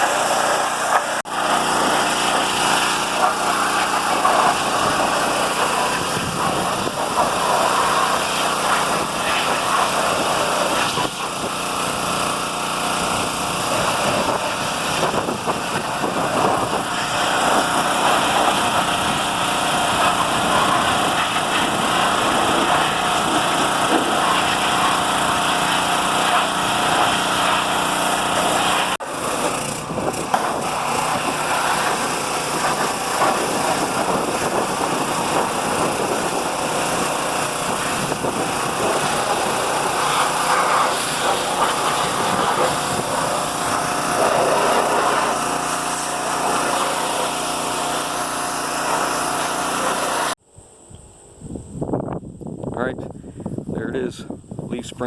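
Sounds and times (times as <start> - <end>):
pressure washer engine drone: 0.0 - 50.4
water spray hissing: 0.0 - 50.4.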